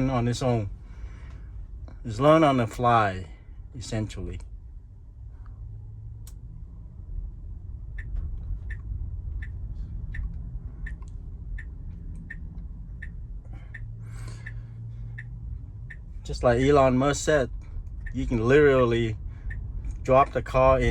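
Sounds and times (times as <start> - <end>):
low road rumble: 0.0 - 20.9
turn signal clicking: 7.4 - 20.9.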